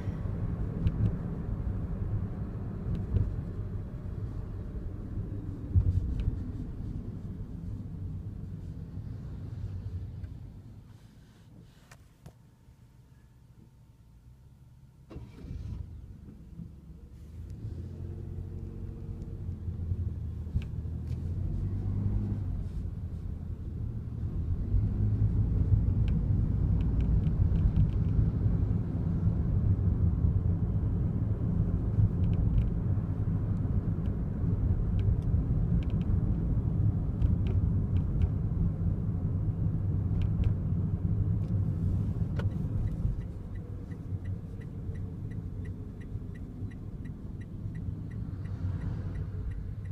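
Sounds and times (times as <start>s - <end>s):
car engine and road rumble: 0.0s - 49.9s.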